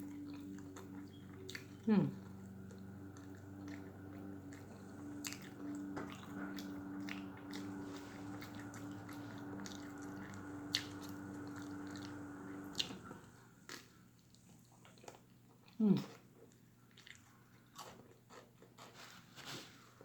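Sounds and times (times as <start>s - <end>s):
steady low hum: 0.0s - 14.4s
chewing and lip smacking: 0.0s - 18.9s.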